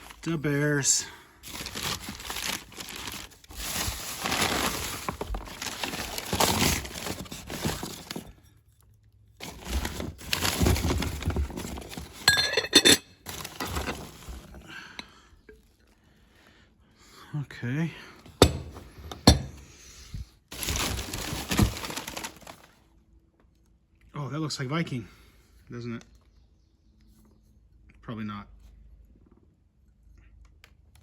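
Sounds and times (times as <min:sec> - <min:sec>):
rustling and shifting items: 0:00.0 - 0:16.0, 0:18.3 - 0:22.9
glass clink: 0:12.3 - 0:13.1.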